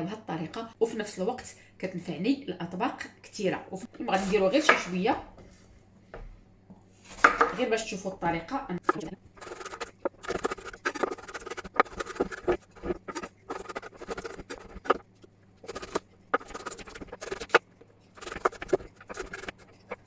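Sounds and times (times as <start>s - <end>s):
knife chopping on cutting board: 4.2s - 5.5s, 7.1s - 7.7s, 8.8s - 15.0s, 15.6s - 17.6s.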